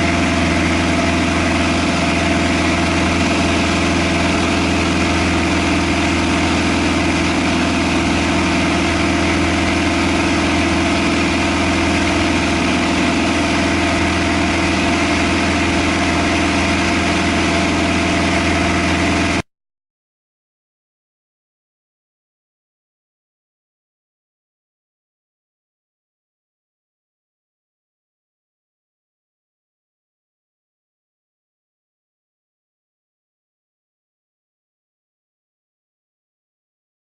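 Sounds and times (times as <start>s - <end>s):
propeller plane engine drone: 0.0s - 19.4s.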